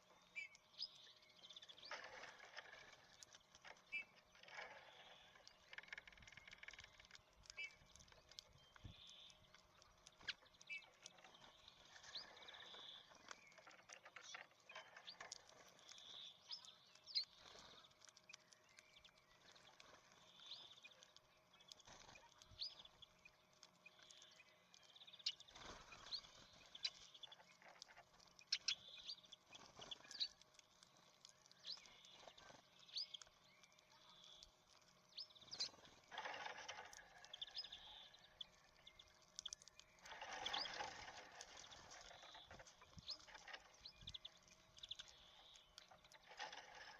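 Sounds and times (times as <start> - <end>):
faint bird chirps: 0.0 - 46.9.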